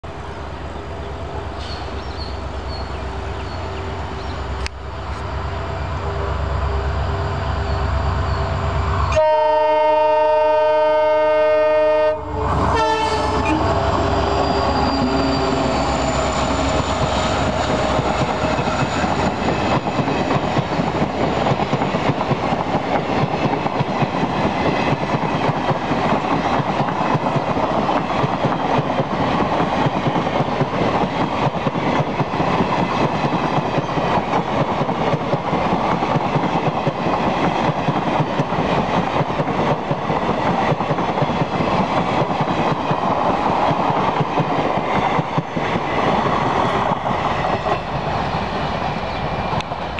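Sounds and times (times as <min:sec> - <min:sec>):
faint locomotive engine tones: 0:00.1 - 0:22.1
locomotive horn: 0:09.1 - 0:16.0
train wheels clattering on rails: 0:14.9 - 0:49.9.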